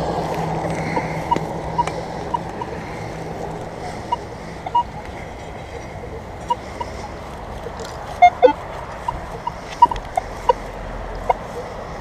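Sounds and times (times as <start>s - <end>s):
steady rushing background: 0.0s - 12.0s
metal detector beeps: 1.0s - 3.2s, 4.0s - 7.0s, 7.7s - 11.6s.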